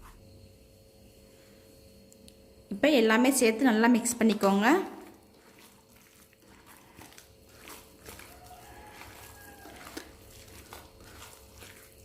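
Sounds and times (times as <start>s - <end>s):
soft clicks of mixing: 2.0s - 2.4s, 4.2s - 12.0s
wet squelching of mixture: 3.9s - 12.0s.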